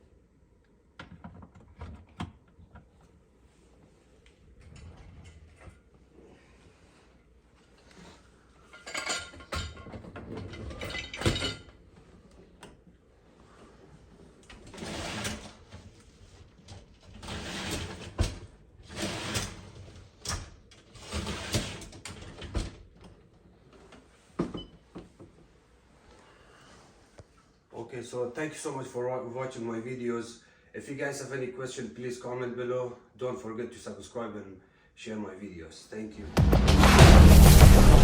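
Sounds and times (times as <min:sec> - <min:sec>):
dishwasher racks sliding: 0:08.8 - 0:11.6, 0:14.6 - 0:22.8.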